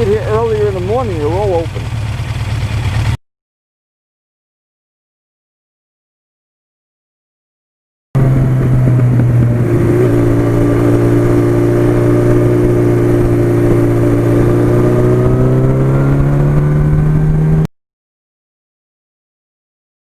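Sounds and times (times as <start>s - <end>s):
motorcycle engine running: 0.0s - 3.2s, 8.2s - 17.7s
wind rumble on microphone: 8.2s - 17.7s.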